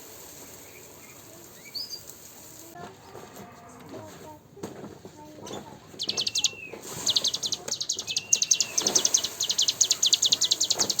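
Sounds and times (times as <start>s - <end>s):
bird singing chattering trill: 0.6s - 2.1s, 5.5s - 11.0s
bird whistle: 6.0s - 11.0s.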